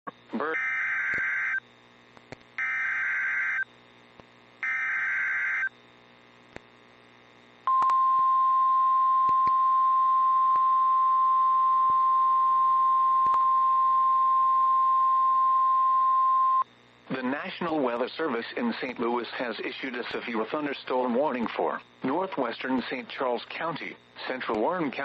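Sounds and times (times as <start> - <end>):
steady warning alarm tone: 0.5 - 1.6, 2.6 - 3.6, 4.6 - 5.7.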